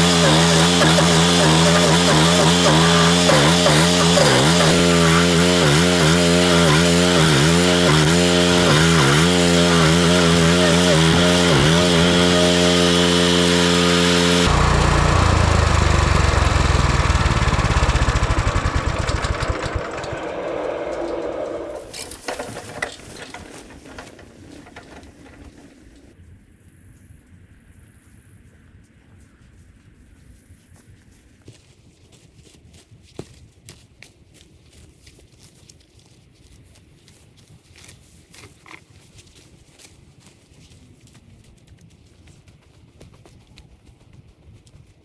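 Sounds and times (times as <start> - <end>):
engine winding down: 0.0 - 26.1
stump grinder engine running: 0.0 - 26.1.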